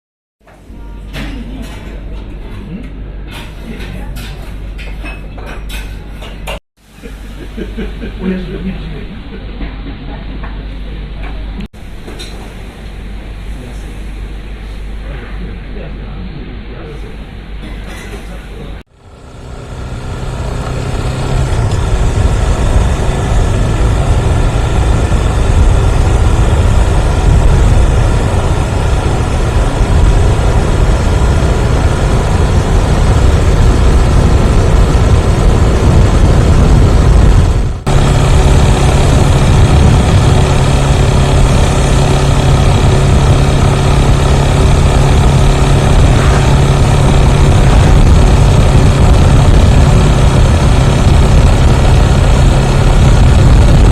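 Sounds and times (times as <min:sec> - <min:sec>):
steady low hum: 0:06.8 - 0:53.9
motorcycle engine running: 0:18.9 - 0:53.9.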